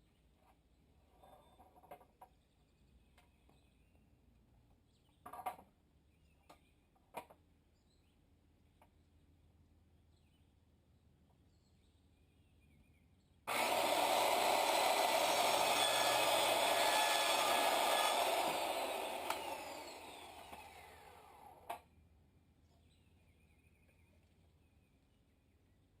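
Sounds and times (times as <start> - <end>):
power saw cutting wood: 13.5 - 21.8.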